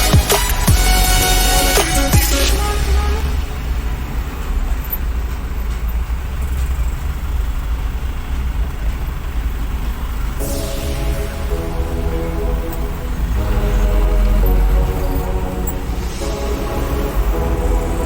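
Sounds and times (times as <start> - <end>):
music: 0.0 - 3.3, 10.4 - 18.0
deep diesel engine rumble: 0.0 - 18.0.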